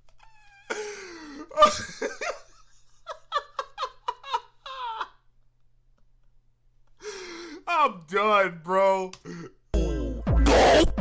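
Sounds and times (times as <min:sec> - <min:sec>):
person laughing hard: 0:00.2 - 0:05.3.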